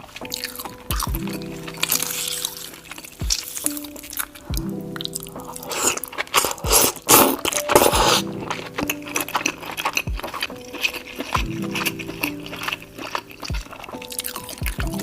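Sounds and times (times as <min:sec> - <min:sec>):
crunchy bites and chewing: 0:00.0 - 0:15.0
background music with bass beat: 0:00.9 - 0:01.6, 0:14.6 - 0:15.0.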